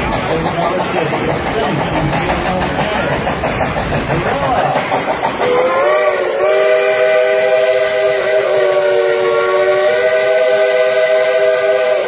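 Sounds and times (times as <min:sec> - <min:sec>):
steam locomotive chime whistle: 0:05.4 - 0:12.0.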